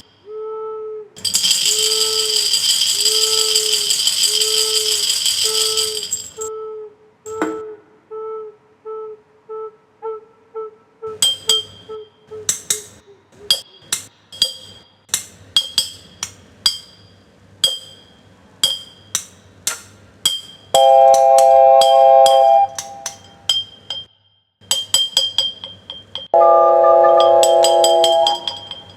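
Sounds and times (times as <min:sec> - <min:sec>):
glassy clinks and taps: 0:01.2 - 0:06.5, 0:11.2 - 0:11.9, 0:12.5 - 0:14.9, 0:20.3 - 0:26.4, 0:27.2 - 0:28.9
held recorder tone: 0:20.8 - 0:23.1, 0:26.4 - 0:28.8
short repeated note: 0:26.4 - 0:28.6.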